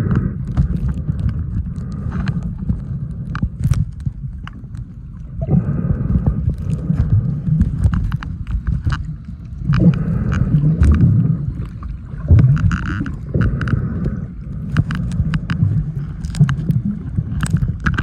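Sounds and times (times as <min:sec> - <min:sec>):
sea water splashing: 0:00.0 - 0:18.0
short crackles: 0:05.6 - 0:18.0.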